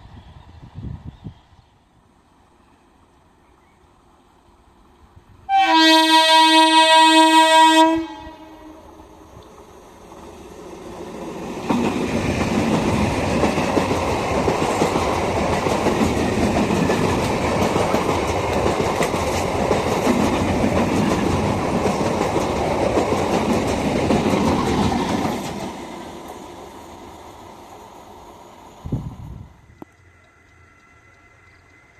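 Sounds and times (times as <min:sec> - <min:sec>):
train horn blast: 0:05.5 - 0:09.0
train rattling over rails: 0:05.6 - 0:31.9.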